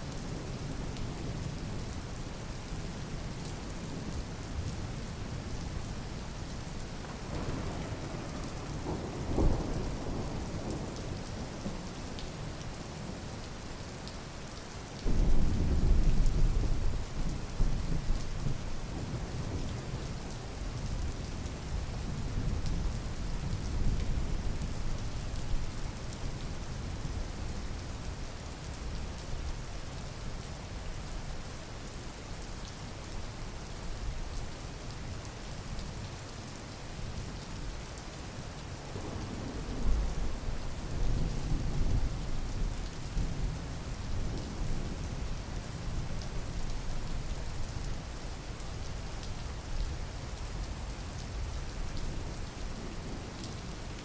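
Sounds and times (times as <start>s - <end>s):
steady rain: 0.0s - 54.0s.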